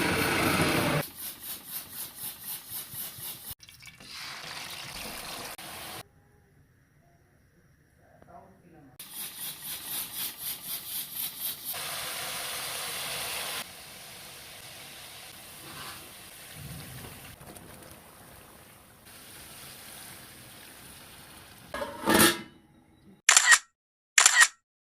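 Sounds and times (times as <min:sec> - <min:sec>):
food sizzling in hot oil: 0:03.0 - 0:06.0, 0:09.0 - 0:21.8.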